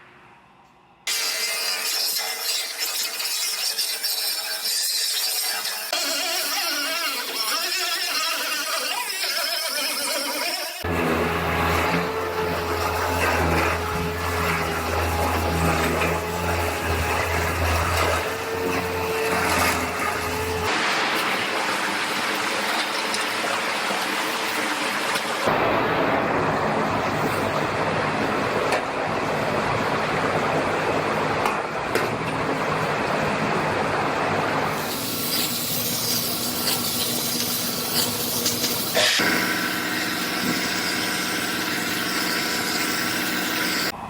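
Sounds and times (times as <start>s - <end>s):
power tool hissing and whining: 1.1s - 25.6s, 34.7s - 44.0s.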